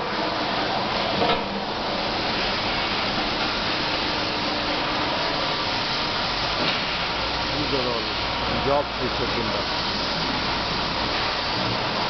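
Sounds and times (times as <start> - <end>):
machine hiss and hum: 0.0 - 12.0.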